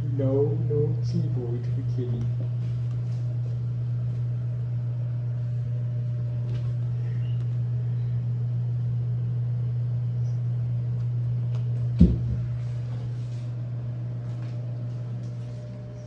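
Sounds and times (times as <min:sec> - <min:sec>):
low hum: 0:00.0 - 0:16.0
loud thump: 0:12.0 - 0:12.5.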